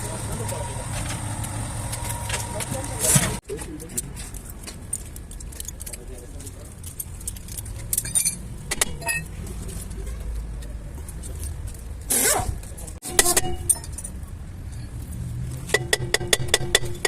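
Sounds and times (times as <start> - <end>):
metallic clinks: 4.4 - 9.4, 13.1 - 14.3.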